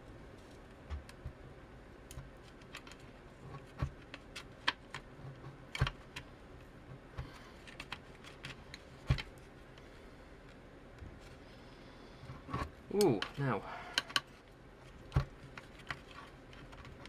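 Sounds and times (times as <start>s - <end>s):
small clicks and taps of parts: 12.5s - 17.0s.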